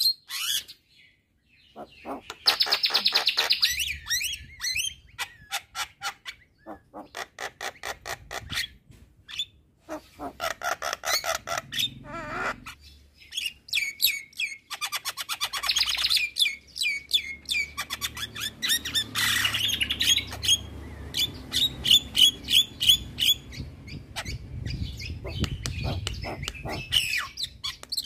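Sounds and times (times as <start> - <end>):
bird whistled song: 0.0 - 5.5, 12.7 - 28.0
bird harsh squawk: 1.6 - 8.7, 9.3 - 20.7, 25.1 - 27.8.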